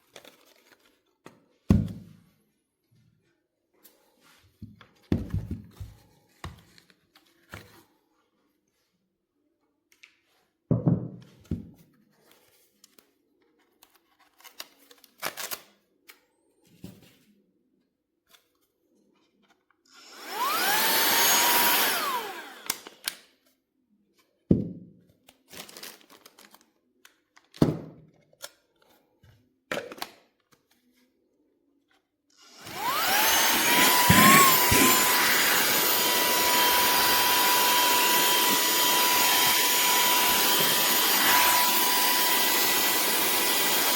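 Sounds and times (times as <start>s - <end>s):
handheld vacuum motor whining: 19.9s - 23.0s, 32.4s - 43.9s.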